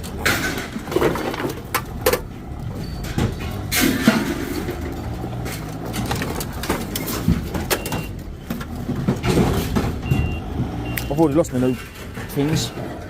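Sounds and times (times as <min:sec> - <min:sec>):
scrap metal clanking: 0:00.0 - 0:10.3
vehicle engine running: 0:00.0 - 0:13.0
reversing beep: 0:07.7 - 0:08.2, 0:10.0 - 0:13.0.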